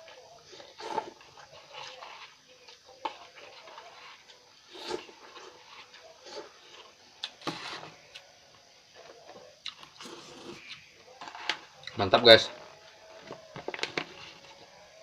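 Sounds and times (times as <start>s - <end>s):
person chewing noodles: 3.2s - 7.5s, 9.6s - 10.8s.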